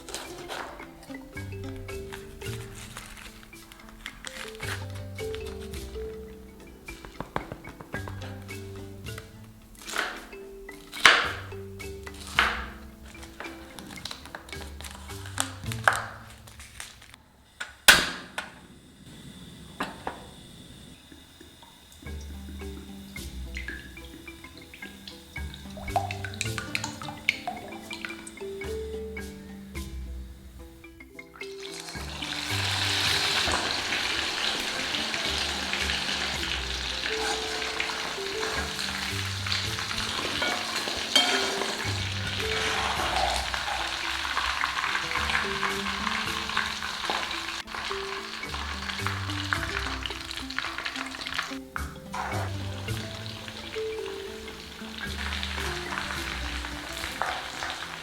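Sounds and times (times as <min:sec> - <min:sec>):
soft background music: 0:00.0 - 0:17.2, 0:20.3 - 0:58.0
food sizzling in hot oil: 0:31.5 - 0:58.0
utensil knocking on pan: 0:33.4 - 0:47.9.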